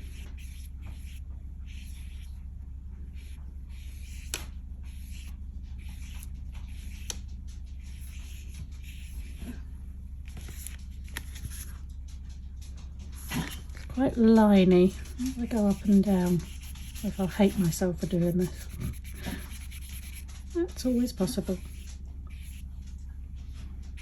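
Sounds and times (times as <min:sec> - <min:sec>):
paintbrush stroking on paper: 0:00.0 - 0:02.3, 0:03.1 - 0:04.3, 0:04.9 - 0:07.1, 0:07.8 - 0:09.6, 0:10.3 - 0:11.7, 0:14.2 - 0:22.6
steady low hum: 0:00.0 - 0:24.0.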